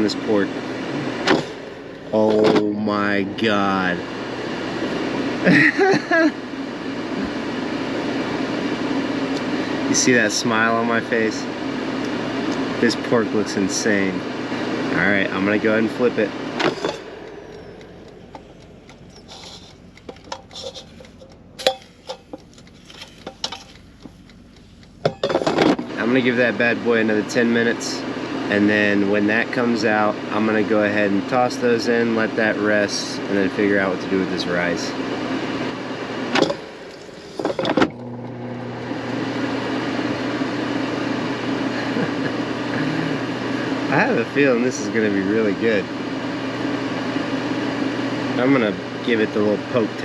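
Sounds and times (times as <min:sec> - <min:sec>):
air fryer humming: 0:00.0 - 0:50.0
utensils clinking on air fryer basket: 0:19.2 - 0:23.8, 0:25.0 - 0:25.8.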